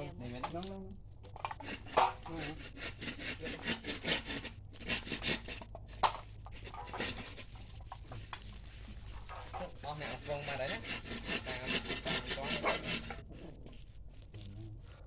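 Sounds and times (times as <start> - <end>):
knife sawing and scraping: 0.0 - 14.7.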